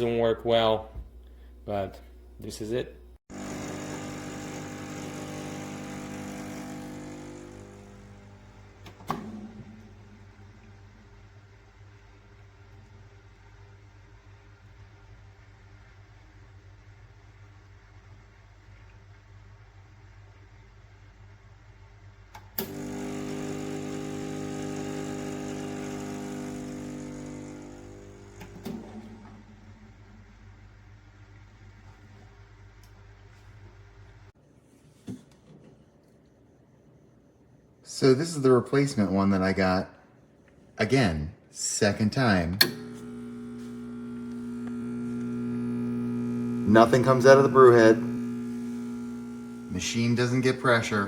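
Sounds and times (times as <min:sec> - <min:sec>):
espresso machine pump humming: 0:03.3 - 0:09.2, 0:22.6 - 0:29.3, 0:42.6 - 0:51.0.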